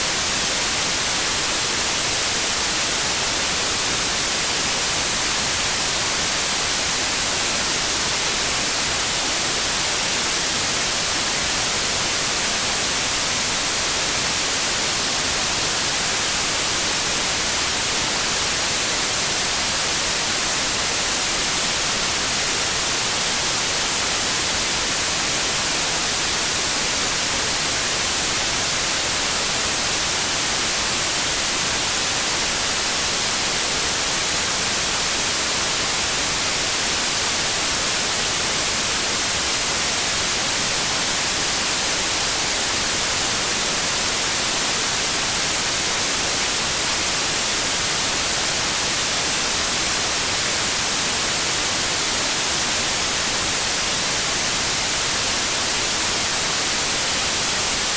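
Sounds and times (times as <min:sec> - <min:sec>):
hissing white noise: 0:00.0 - 0:57.9.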